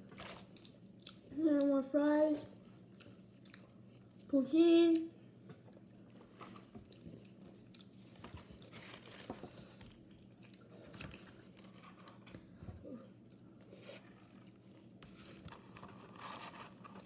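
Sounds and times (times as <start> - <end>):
faint chewing: 0.0 - 1.8, 2.4 - 4.3, 4.9 - 12.3.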